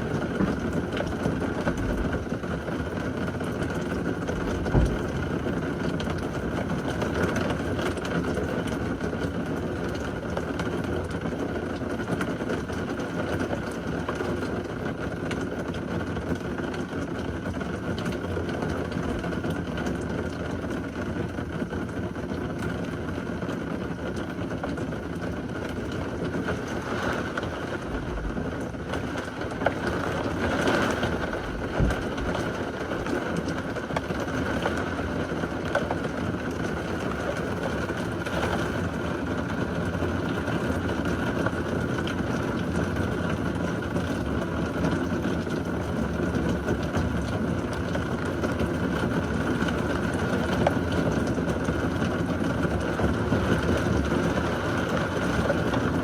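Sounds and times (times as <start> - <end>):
steady rain: 0.0 - 56.0
low rolling thunder: 26.2 - 33.7.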